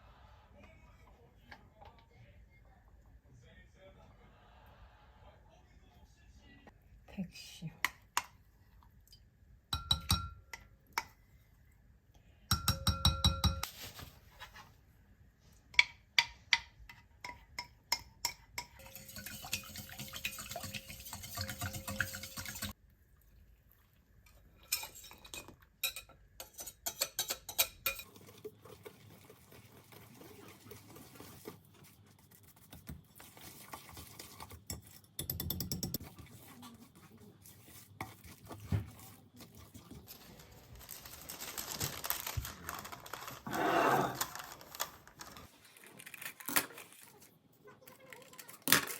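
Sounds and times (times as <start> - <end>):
utensils and bowls clinking: 17.2 - 22.8, 24.6 - 31.3, 38.1 - 45.5
scraping in a bowl: 18.6 - 22.8, 26.4 - 35.2, 35.9 - 45.5.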